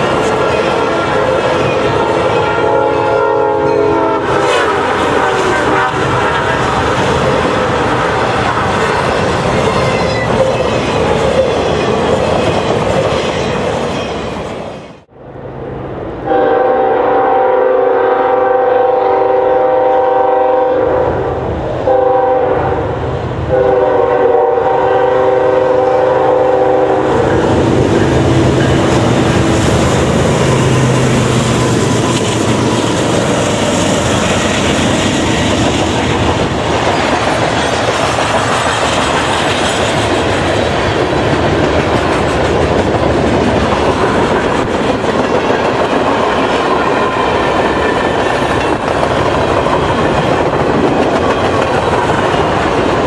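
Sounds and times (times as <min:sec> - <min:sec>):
freight train running by: 0:00.0 - 0:53.0
locomotive air horn blasts: 0:00.3 - 0:06.8, 0:16.2 - 0:22.9, 0:23.5 - 0:29.6.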